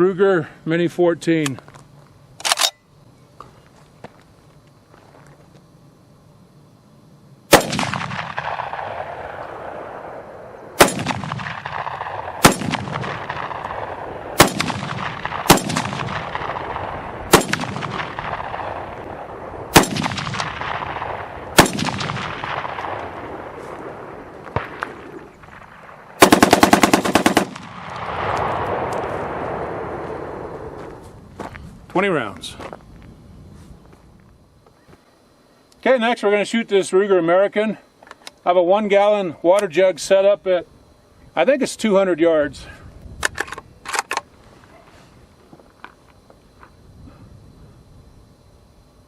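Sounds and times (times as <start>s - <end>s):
rifle shots with echo: 7.5s - 30.8s.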